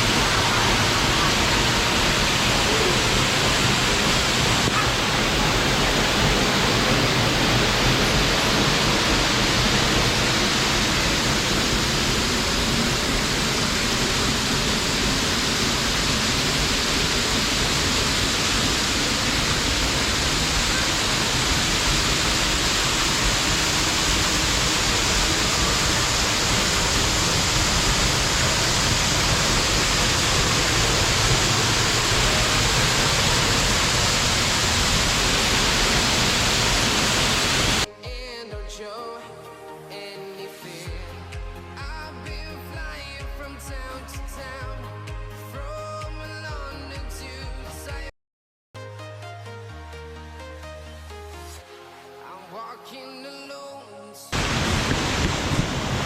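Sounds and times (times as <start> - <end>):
waterfall roaring: 0.0 - 37.9, 54.4 - 56.0.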